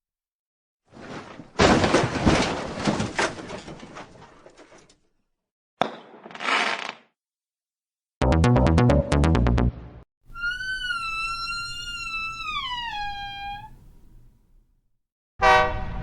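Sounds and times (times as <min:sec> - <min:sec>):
loud clattering crash: 0:01.0 - 0:04.8.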